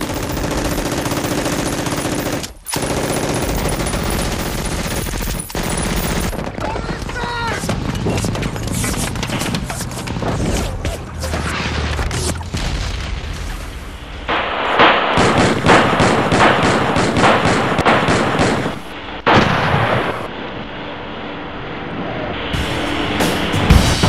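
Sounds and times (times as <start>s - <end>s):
gunshots: 0.0s - 10.2s, 14.3s - 20.3s.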